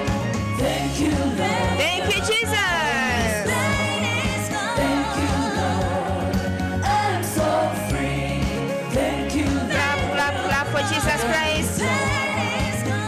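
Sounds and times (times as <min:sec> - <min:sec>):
bass and drum backing: 0:00.0 - 0:13.0
gospel singing voice: 0:00.0 - 0:13.0.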